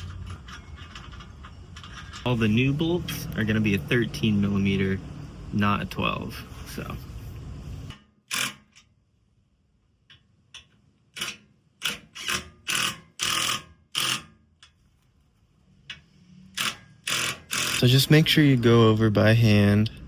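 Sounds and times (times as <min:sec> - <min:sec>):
hand tools and bolts clicking: 0:00.0 - 0:04.4, 0:07.9 - 0:09.0, 0:10.0 - 0:15.1, 0:15.7 - 0:18.3
steady background noise: 0:00.0 - 0:13.4.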